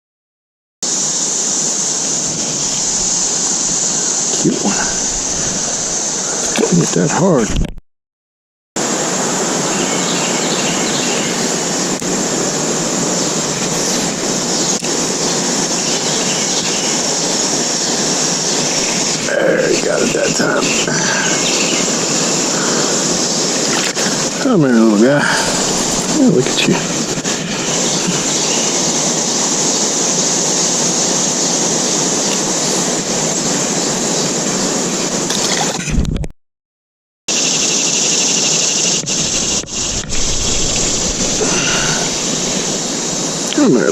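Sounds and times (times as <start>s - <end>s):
river rushing over rocks: 8.8s - 35.6s, 39.2s - 43.9s.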